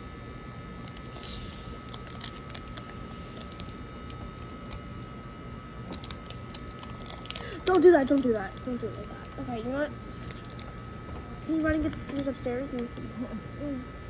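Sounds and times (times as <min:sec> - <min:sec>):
plastic packet rustling: 0:01.8 - 0:03.8, 0:05.9 - 0:09.5
plastic crinkling: 0:01.8 - 0:04.9, 0:05.8 - 0:09.5, 0:10.1 - 0:13.1.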